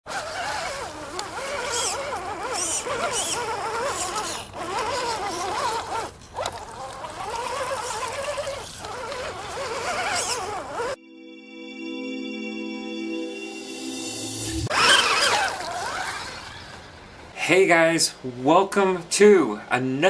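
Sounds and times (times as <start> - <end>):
electric motor whine: 0.1 - 11.0.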